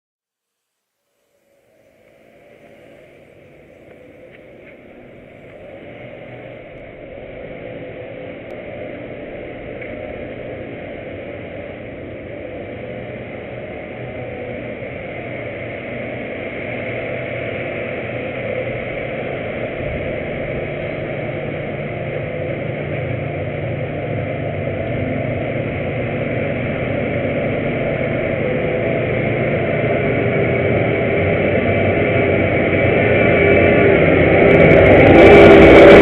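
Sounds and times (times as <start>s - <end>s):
combine harvester running: 1.9s - 36.0s.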